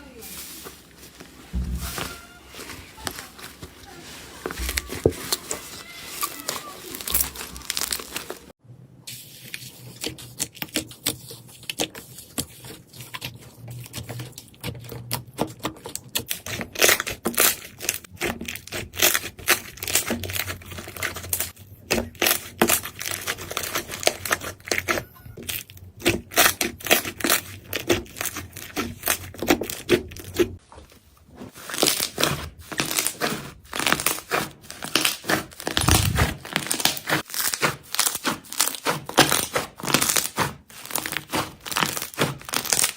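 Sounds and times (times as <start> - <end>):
slime crackling and popping: 1.4 - 8.5, 32.8 - 42.9.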